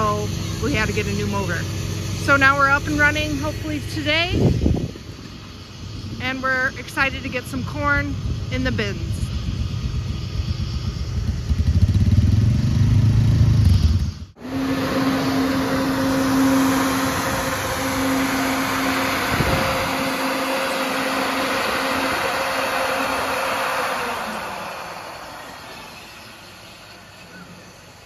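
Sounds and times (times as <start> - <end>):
hiss: 0.0 - 13.0, 13.8 - 28.0
low engine rumble: 0.0 - 28.0
steady machine hum: 0.0 - 28.0.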